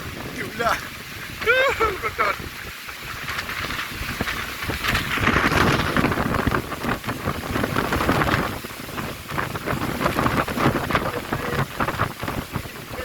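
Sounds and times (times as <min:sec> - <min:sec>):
heavy rain in strong wind: 0:00.0 - 0:13.0
rain drops hitting microphone: 0:00.0 - 0:13.0.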